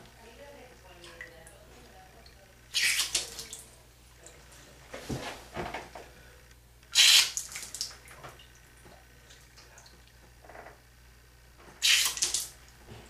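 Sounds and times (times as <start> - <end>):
water splashing and dripping: 2.8 - 3.7, 7.0 - 8.9, 11.8 - 12.6.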